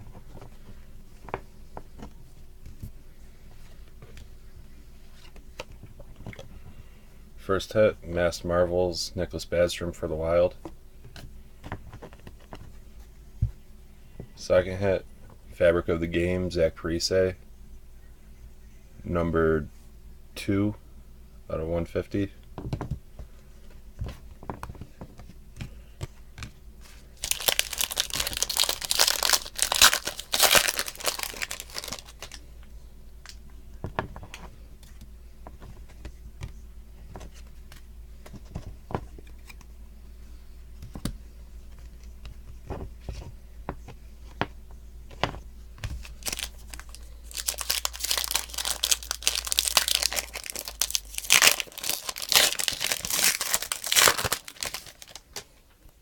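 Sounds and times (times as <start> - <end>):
foil wrappers tearing and crinkling: 27.2 - 32.4, 46.0 - 55.4.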